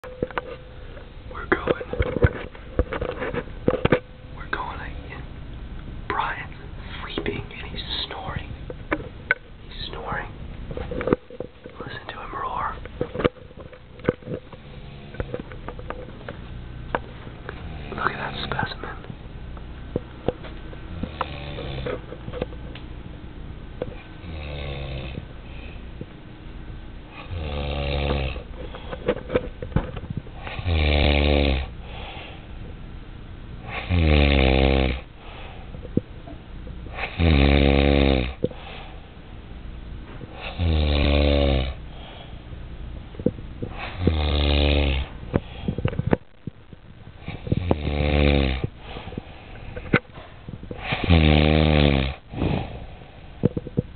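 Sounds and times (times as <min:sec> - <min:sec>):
man snoring deeply: 0:21.0 - 0:21.9, 0:24.2 - 0:25.2, 0:27.2 - 0:28.4, 0:30.4 - 0:31.7, 0:33.6 - 0:35.1, 0:37.0 - 0:38.4, 0:40.4 - 0:41.8, 0:43.8 - 0:45.1, 0:47.3 - 0:48.7, 0:50.8 - 0:52.8.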